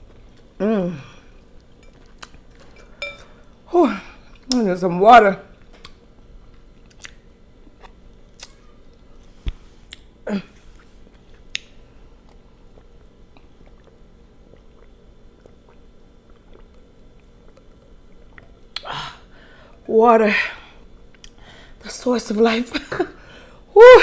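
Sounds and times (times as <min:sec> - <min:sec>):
mouth sounds of eating: 0:00.0 - 0:03.1, 0:06.8 - 0:09.3, 0:09.9 - 0:19.3.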